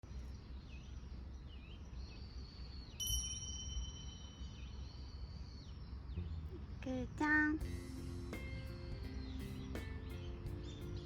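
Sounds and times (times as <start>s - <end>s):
small birds chirping: 0.0s - 3.4s, 4.0s - 11.0s
bell-like ding: 3.0s - 4.7s
low outdoor rumble: 5.5s - 11.0s.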